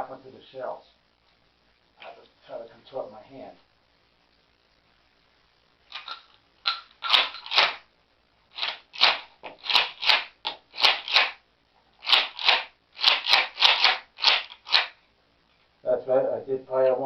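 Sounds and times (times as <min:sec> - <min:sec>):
shotgun slide clacking: 0:05.9 - 0:07.8, 0:08.6 - 0:11.4, 0:12.0 - 0:14.9.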